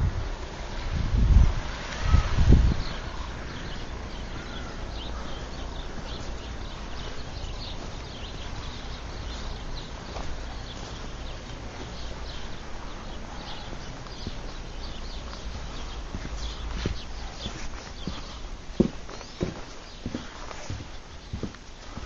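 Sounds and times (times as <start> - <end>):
steady outdoor hiss: 0.0 - 22.0
wind buffeting microphone: 0.0 - 22.0.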